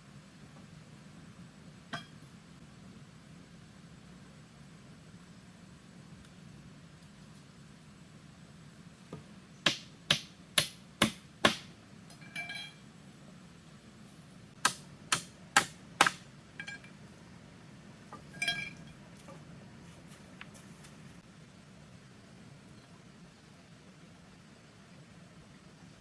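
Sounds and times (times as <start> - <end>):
sharp tool strikes: 9.6 - 11.7, 14.6 - 16.2.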